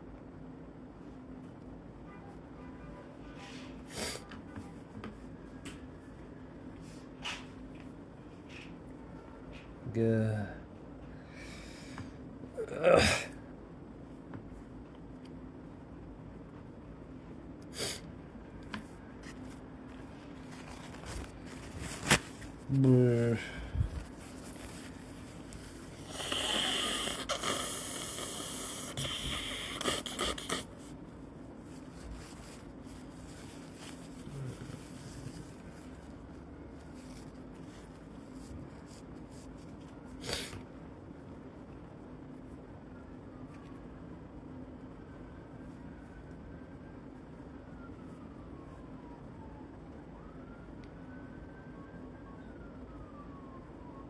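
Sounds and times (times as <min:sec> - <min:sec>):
faint steady hum: 0:00.0 - 0:54.0
noisy breathing through stuffy nose: 0:23.6 - 0:31.0
emergency siren wailing: 0:45.0 - 0:54.0.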